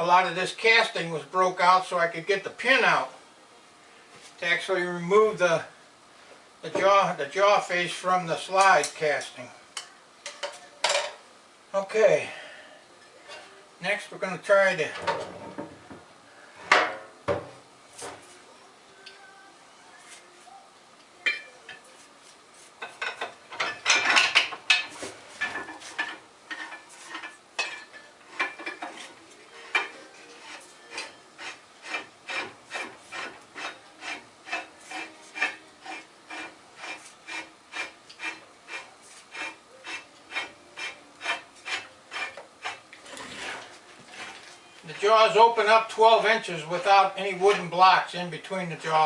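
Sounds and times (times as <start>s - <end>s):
vise screw scraping metal: 30.4s - 43.6s.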